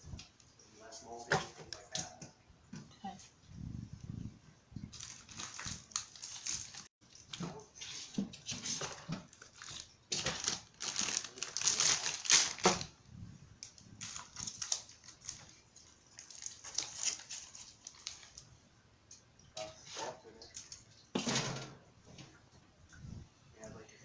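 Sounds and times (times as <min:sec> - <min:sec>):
plastic packaging crinkling: 0:04.9 - 0:06.9, 0:08.8 - 0:12.9, 0:13.6 - 0:18.5.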